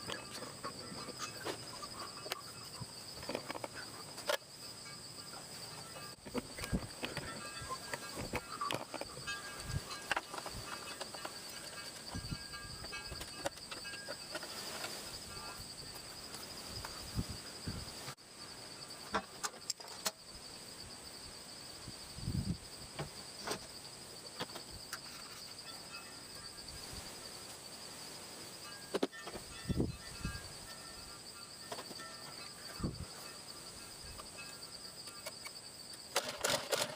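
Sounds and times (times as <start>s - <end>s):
insects trilling: 0.0s - 36.9s.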